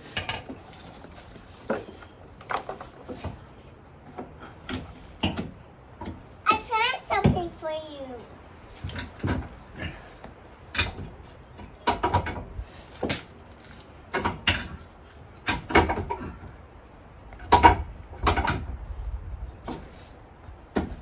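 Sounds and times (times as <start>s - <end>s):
hard objects knocking and clunking: 4.0s - 6.3s, 8.8s - 13.3s, 15.4s - 16.6s, 17.4s - 18.8s.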